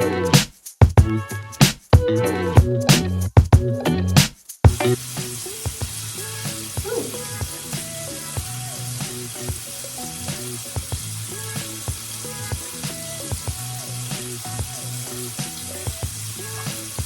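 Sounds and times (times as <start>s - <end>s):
food sizzling in a frying pan: 4.7s - 17.0s
utensil clicking against a pan: 4.7s - 17.0s.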